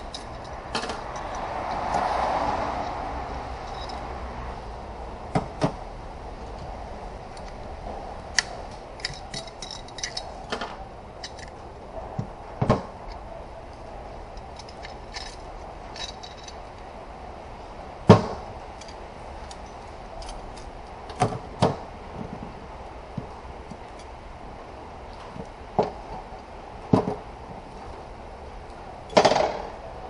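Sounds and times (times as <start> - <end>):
metal parts clinking and knocking: 0.0 - 2.1, 3.6 - 4.1, 8.3 - 11.6, 13.8 - 16.9, 18.8 - 21.7.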